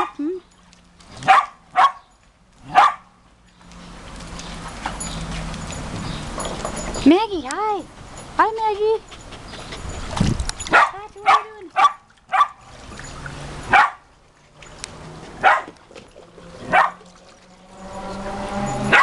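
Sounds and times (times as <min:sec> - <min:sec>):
small dogs barking: 0:01.2 - 0:03.1, 0:10.7 - 0:12.6, 0:13.7 - 0:14.0, 0:15.4 - 0:15.8, 0:16.6 - 0:17.1.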